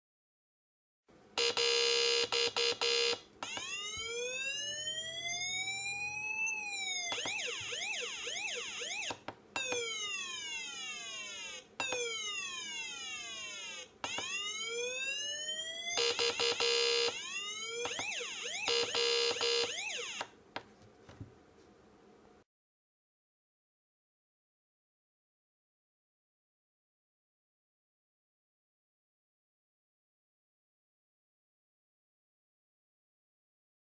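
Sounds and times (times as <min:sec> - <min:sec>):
electronic police siren: 0:01.4 - 0:20.4.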